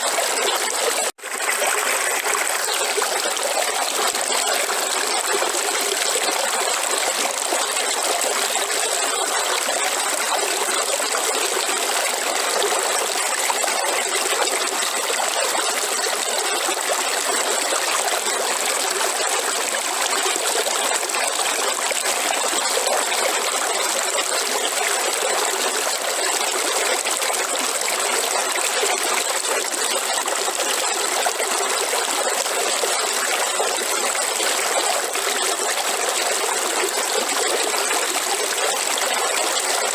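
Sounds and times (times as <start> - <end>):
river water flowing: 0.0 - 20.5.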